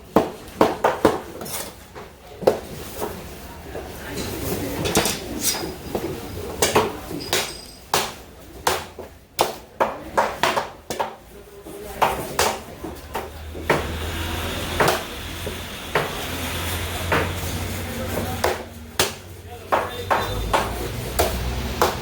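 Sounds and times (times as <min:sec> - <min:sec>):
cleaver chopping fish: 0:06.6 - 0:11.2, 0:18.2 - 0:22.0.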